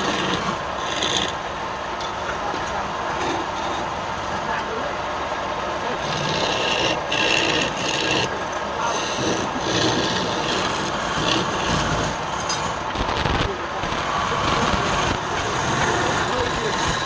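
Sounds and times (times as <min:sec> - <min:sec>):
tool scraping wood on lathe: 0:00.0 - 0:01.4, 0:03.2 - 0:03.9, 0:06.0 - 0:17.0.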